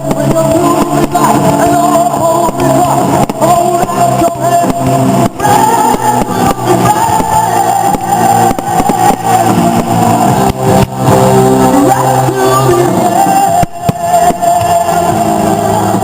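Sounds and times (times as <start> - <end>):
loud rock music: 0.0 - 16.0
person singing: 0.0 - 16.0.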